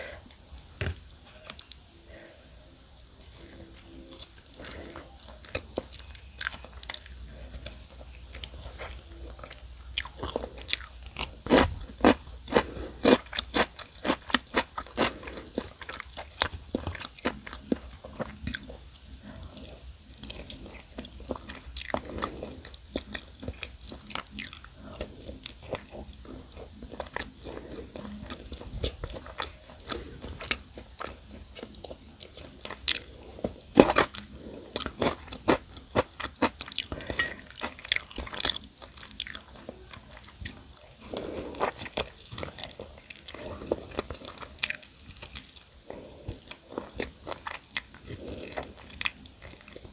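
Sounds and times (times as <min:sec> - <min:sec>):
crunching fried chicken: 0:00.0 - 0:49.9.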